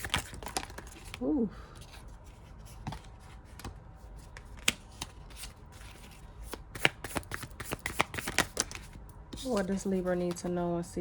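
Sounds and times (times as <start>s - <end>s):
cards being shuffled: 0.0s - 10.4s
rapid card clicks: 6.5s - 8.8s.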